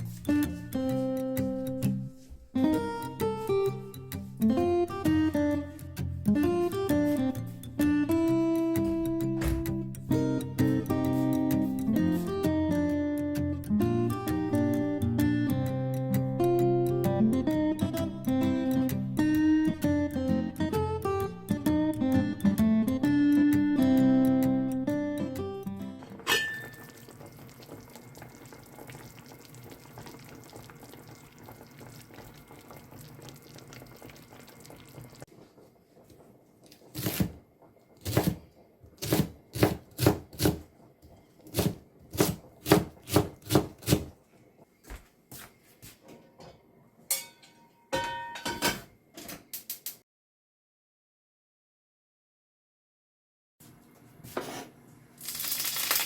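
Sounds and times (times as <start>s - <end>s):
guitar music: 0.0s - 26.2s
kitchenware knocking: 47.1s - 48.9s.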